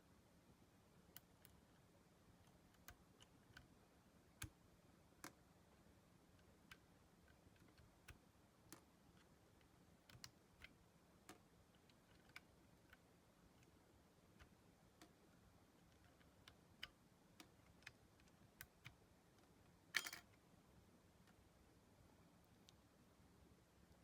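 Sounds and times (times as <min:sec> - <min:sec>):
small clicks from handling keyboard: 0:01.1 - 0:03.8, 0:05.2 - 0:05.4, 0:06.3 - 0:20.4.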